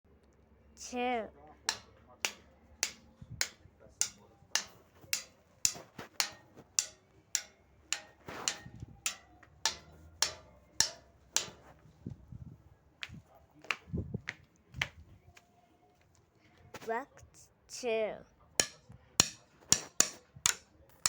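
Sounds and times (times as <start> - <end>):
sharp percussive taps: 1.7 - 11.7.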